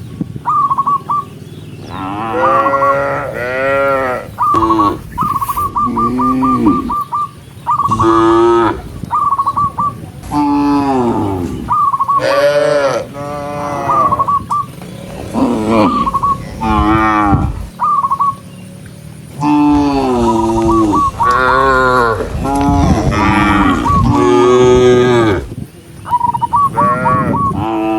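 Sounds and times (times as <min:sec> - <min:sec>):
cattle mooing: 0:01.9 - 0:07.1, 0:07.9 - 0:09.0, 0:10.2 - 0:17.8, 0:19.4 - 0:25.5.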